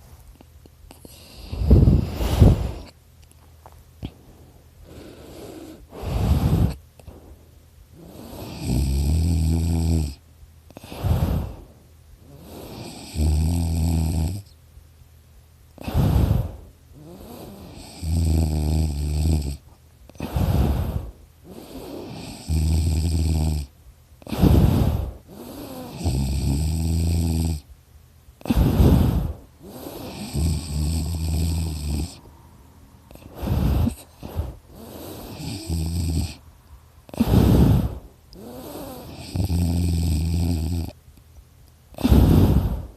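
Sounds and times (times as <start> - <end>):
person snoring: 4.8 - 7.3, 8.0 - 14.6, 15.8 - 27.7, 28.4 - 32.4, 33.1 - 36.4, 37.1 - 41.0, 41.9 - 42.9.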